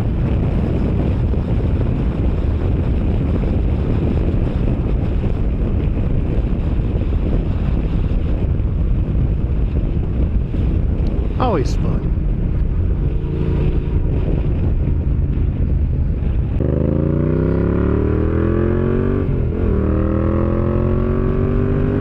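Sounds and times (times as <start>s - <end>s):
wind buffeting microphone: 0.0s - 22.0s
motorcycle engine running: 12.0s - 22.0s.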